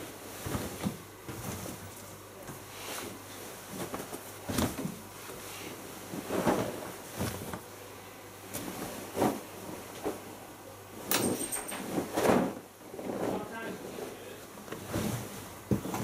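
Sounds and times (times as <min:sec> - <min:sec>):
knocks and clunks of loading laundry: 0:14.7 - 0:16.0.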